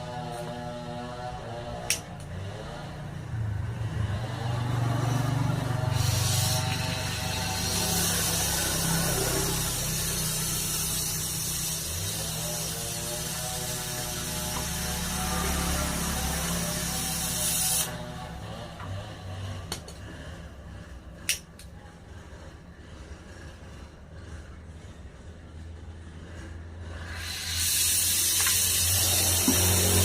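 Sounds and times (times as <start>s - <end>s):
gas hissing: 5.8s - 18.5s, 27.0s - 30.0s.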